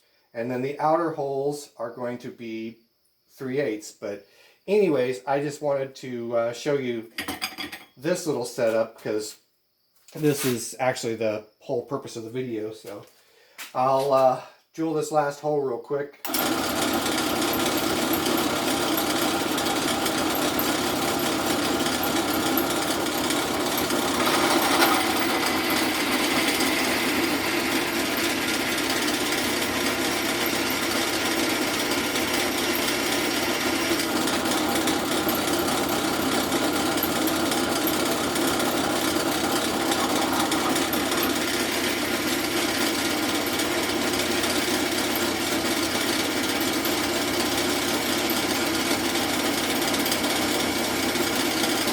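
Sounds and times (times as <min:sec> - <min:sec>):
drill press drilling metal: 0:16.3 - 0:51.9.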